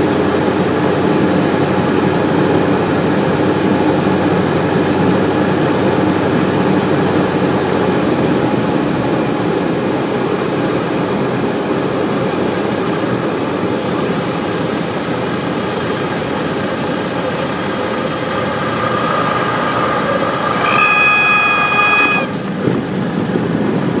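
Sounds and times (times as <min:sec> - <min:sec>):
light aircraft piston engine: 0:00.0 - 0:24.0
stall warning horn tone: 0:17.5 - 0:22.5.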